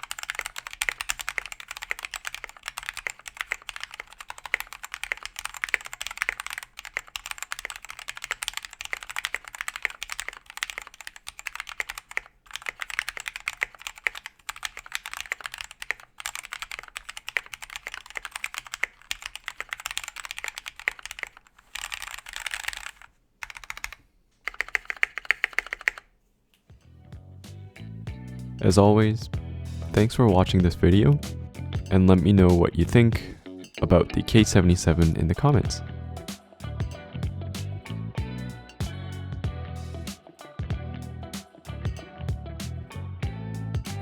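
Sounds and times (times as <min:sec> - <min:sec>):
fast typing on mechanical keyboard: 0:00.0 - 0:26.1.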